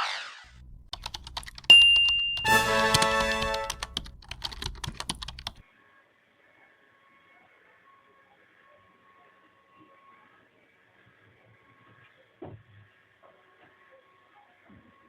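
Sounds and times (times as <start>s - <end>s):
sharp typing clicks: 0.5s - 5.6s
ringing electronic chime: 1.7s - 2.7s.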